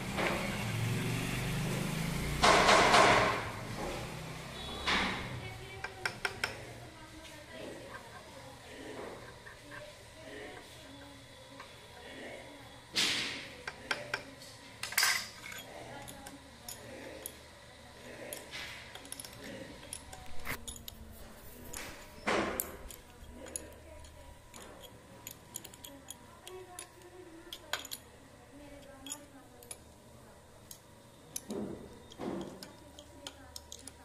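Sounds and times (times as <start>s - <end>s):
metal tool clicks and knocks: 5.8s - 6.6s, 22.4s - 28.0s, 30.7s - 34.0s.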